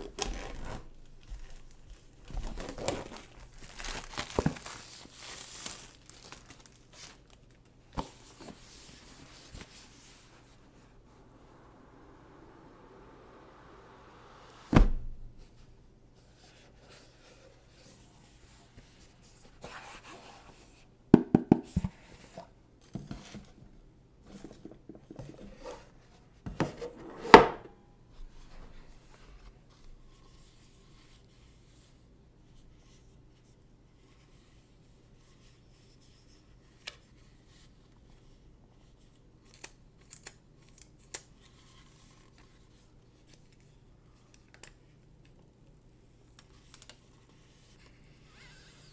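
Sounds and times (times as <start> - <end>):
cardboard and plastic rustling: 0.0 - 10.6
packaging tearing: 2.4 - 7.5.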